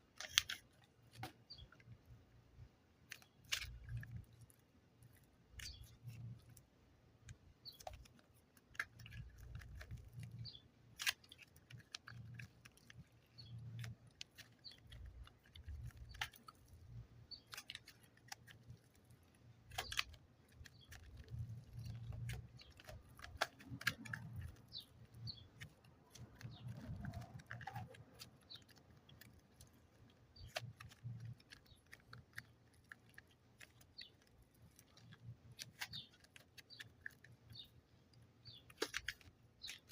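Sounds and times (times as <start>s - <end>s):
packaging crinkling: 7.7s - 37.5s.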